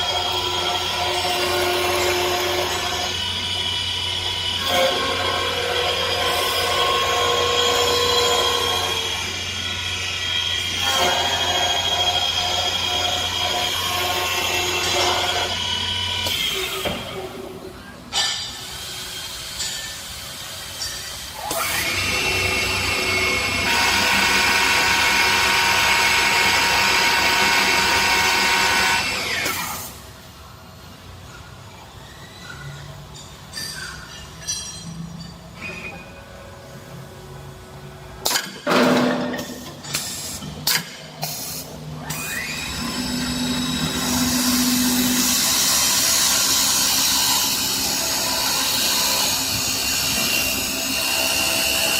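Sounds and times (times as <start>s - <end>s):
lathe machining noise: 0.0s - 16.9s, 18.2s - 30.3s, 41.2s - 51.9s.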